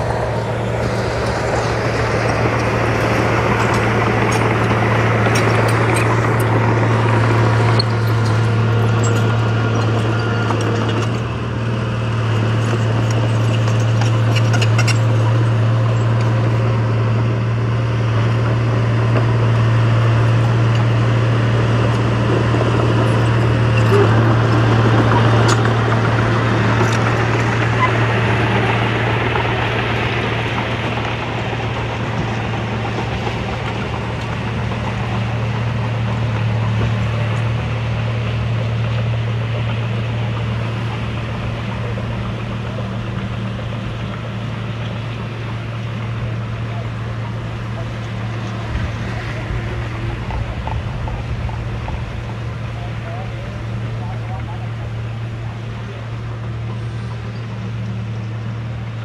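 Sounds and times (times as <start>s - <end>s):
heavy diesel engine running: 0.0s - 59.0s
continuous low hum: 21.6s - 59.0s.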